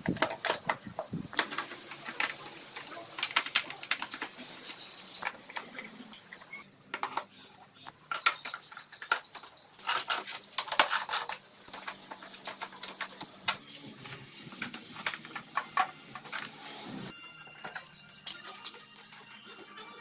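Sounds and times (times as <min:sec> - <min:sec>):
metal tools clinking: 0:08.0 - 0:16.8.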